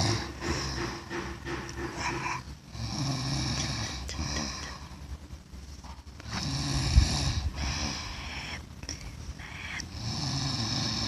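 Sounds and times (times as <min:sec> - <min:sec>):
man snoring: 0:00.0 - 0:00.9, 0:02.2 - 0:04.7, 0:06.3 - 0:08.3, 0:09.6 - 0:11.0.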